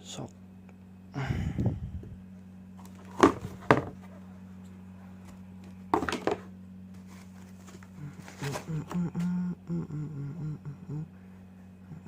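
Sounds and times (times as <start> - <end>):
steady low hum: 0.0 - 12.0
sharp knocks from handled items: 3.1 - 3.9, 5.9 - 6.5.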